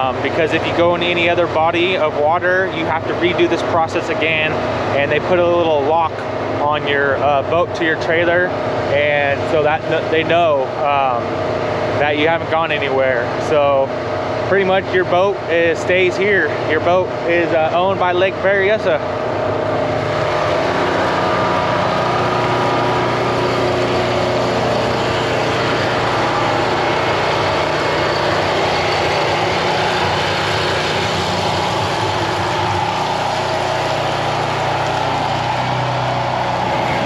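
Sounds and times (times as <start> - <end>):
motor humming: 8.4 - 37.0.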